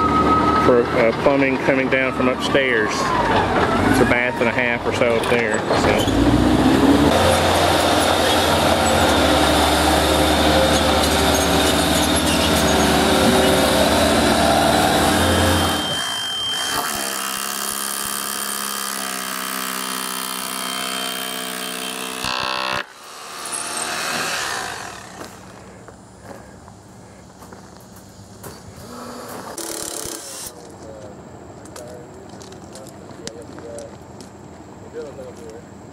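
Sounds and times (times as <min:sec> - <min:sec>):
motorized equipment running: 0:05.8 - 0:25.8, 0:28.8 - 0:30.6.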